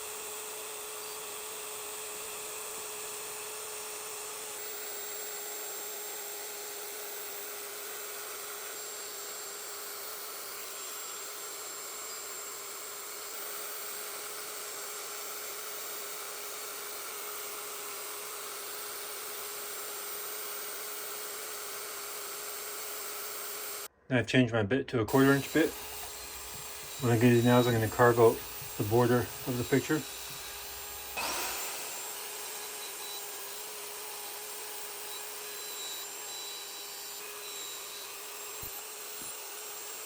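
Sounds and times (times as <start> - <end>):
router cutting wood hiss: 0.0 - 23.9, 25.1 - 40.0
router motor whine: 0.0 - 23.9, 25.1 - 40.0.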